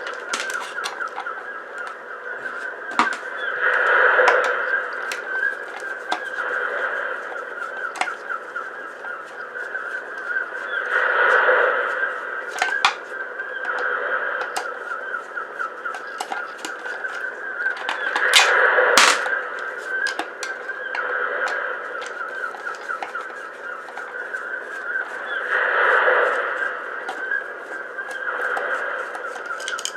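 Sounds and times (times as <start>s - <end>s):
small parts clicking and knocking: 0.0s - 6.6s, 7.2s - 8.4s, 12.5s - 14.8s, 15.8s - 25.2s, 28.1s - 29.9s
bird calls: 0.0s - 29.9s.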